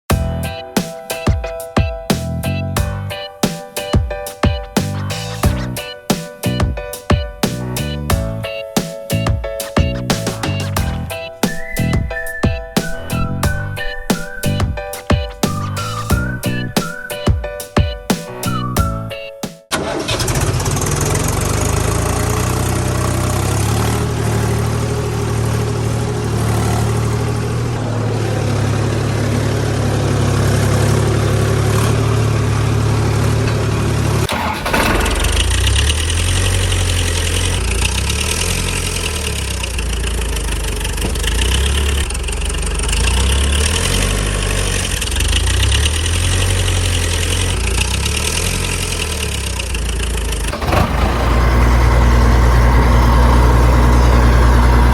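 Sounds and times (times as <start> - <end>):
choppy engine sound: 19.7 - 54.9
vehicle engine idling: 19.7 - 54.9.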